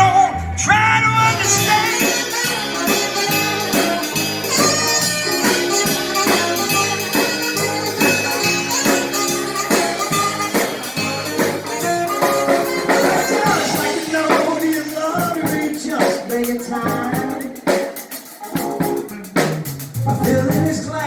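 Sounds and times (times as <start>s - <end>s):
bass: 0.0s - 17.6s, 18.4s - 21.0s
drums and percussion beat: 0.0s - 21.0s.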